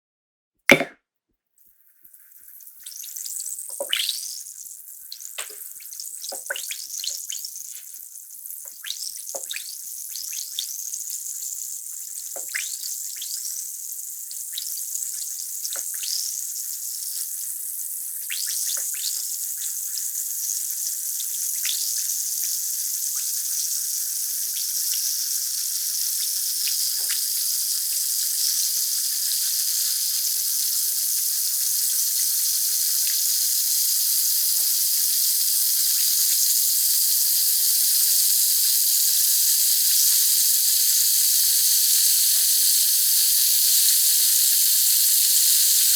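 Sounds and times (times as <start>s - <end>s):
tablet fizzing in water: 1.8s - 8.0s, 8.6s - 10.6s, 11.9s - 13.5s, 26.6s - 45.9s
small bubbles popping: 3.7s - 4.2s, 5.2s - 7.2s.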